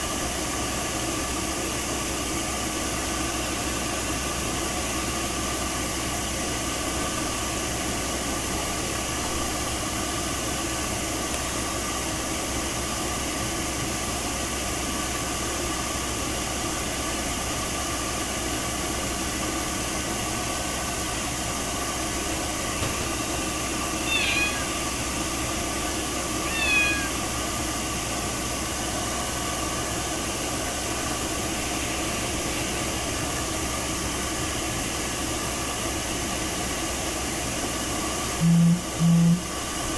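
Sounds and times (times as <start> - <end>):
cat meowing: 23.9 - 25.0, 26.4 - 27.3.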